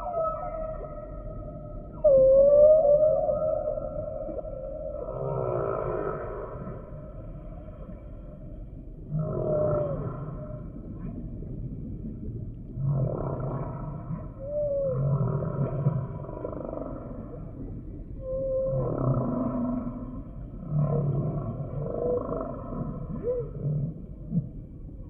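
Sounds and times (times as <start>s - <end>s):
whale song: 0.0s - 25.0s.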